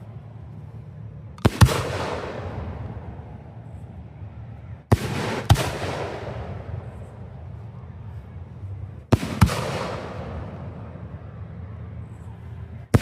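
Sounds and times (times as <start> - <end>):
fireworks bursting: 9.1 - 10.7.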